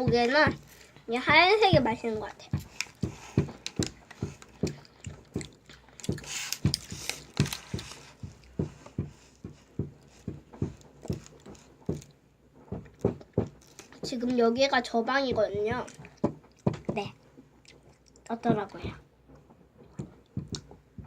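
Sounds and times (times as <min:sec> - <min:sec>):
chewing candy mouth sounds: 0:03.6 - 0:07.8, 0:15.8 - 0:18.4.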